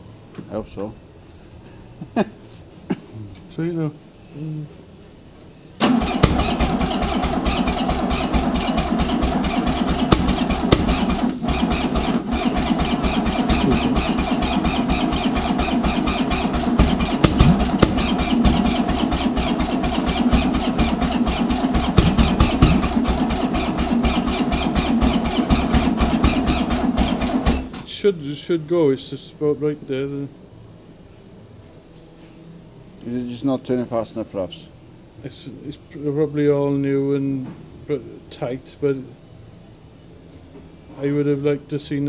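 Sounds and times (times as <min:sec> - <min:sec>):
starter motor cranking engine: 0:05.8 - 0:27.9.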